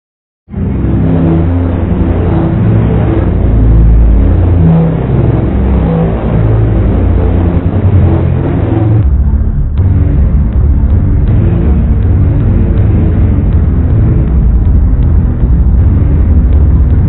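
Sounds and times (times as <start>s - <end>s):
buzzy pitch-shifted saw chords: 0.5s - 17.0s.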